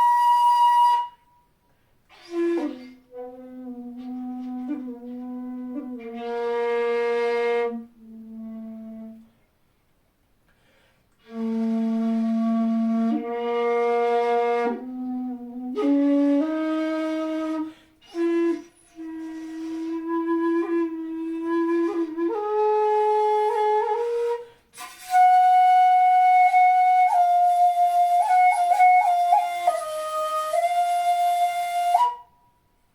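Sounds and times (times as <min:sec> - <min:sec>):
shakuhachi flute long held notes: 0:00.0 - 0:01.5, 0:02.1 - 0:09.3, 0:11.2 - 0:32.7.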